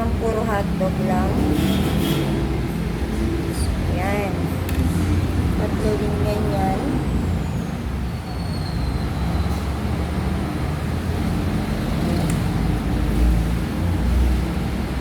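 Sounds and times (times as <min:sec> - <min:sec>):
low rumbling background noise: 0:00.0 - 0:15.0.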